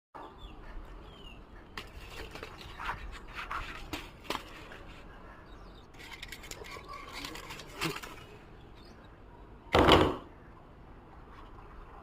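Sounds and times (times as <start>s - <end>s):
vine leaves rustling and scratching: 6.0s - 8.4s.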